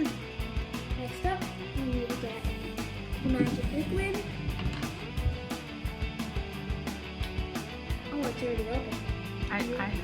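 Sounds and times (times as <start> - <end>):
guitar-led background music: 0.0 - 10.0.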